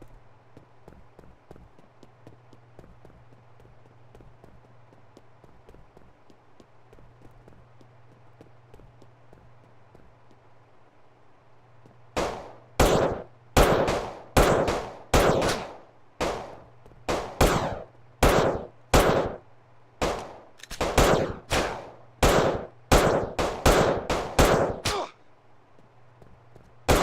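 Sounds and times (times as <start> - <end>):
sharp echoing bangs: 12.1 - 25.1.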